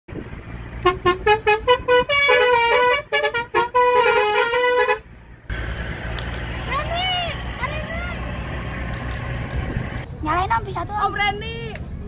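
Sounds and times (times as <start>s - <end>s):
bus musical horn playing a tune: 0.8s - 5.1s.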